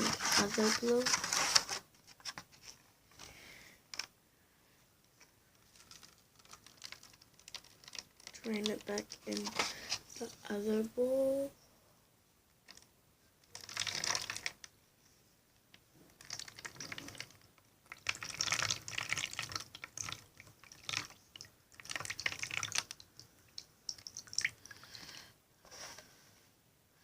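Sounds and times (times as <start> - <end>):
slime splashing and squelching: 13.5 - 14.6, 16.1 - 24.7.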